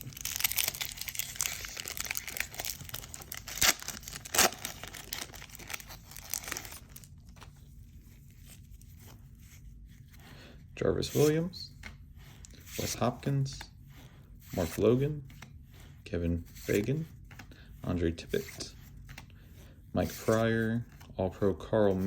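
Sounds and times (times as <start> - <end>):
crinkly wrapper being torn open: 0.0 - 7.1.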